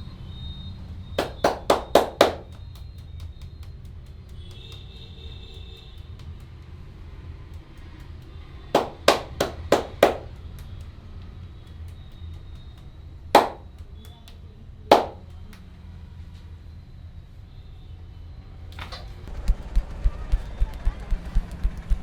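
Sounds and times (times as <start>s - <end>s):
hands slapping body: 1.2s - 6.7s, 7.5s - 11.0s, 11.6s - 15.6s.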